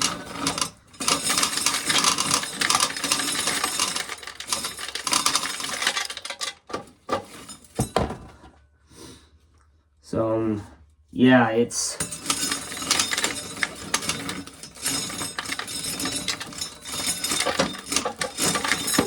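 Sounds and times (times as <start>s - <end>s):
corn kernels rattling into container: 0.0s - 7.6s, 12.0s - 19.0s.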